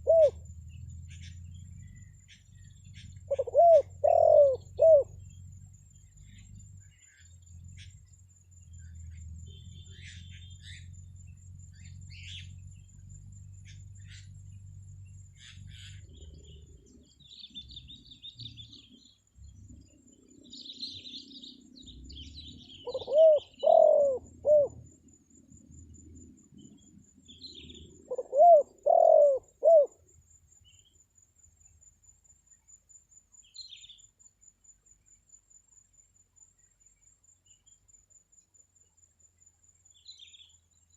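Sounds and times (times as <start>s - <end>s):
dove cooing: 0.0s - 0.5s, 1.1s - 5.2s, 21.8s - 24.9s, 27.3s - 30.0s
small birds chirping: 0.0s - 40.9s.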